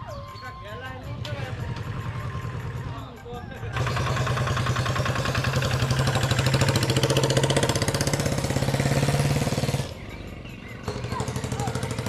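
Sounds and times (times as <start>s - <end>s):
engine idling: 1.0s - 12.0s.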